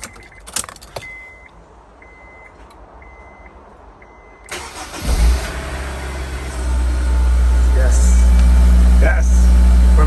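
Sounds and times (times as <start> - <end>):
dashboard warning chime beeping: 0.0 - 4.8
starter cranking engine: 4.5 - 5.4.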